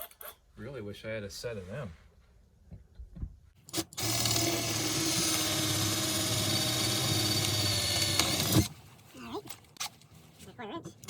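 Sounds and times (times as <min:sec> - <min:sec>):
power drill whirring: 0:03.6 - 0:08.7.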